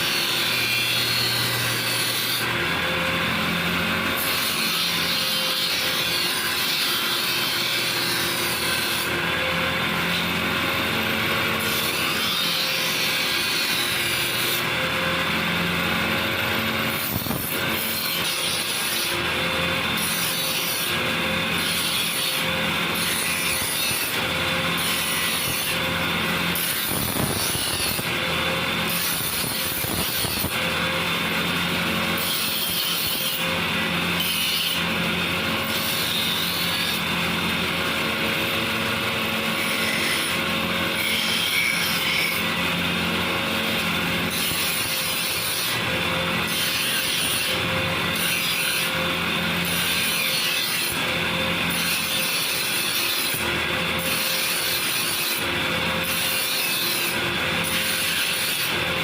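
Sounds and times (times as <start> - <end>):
power tool grinding steel: 0.0 - 59.0.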